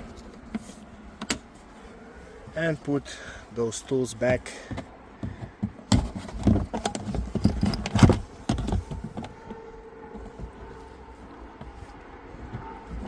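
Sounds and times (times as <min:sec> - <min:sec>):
tools knocking and clattering: 0:04.2 - 0:09.6.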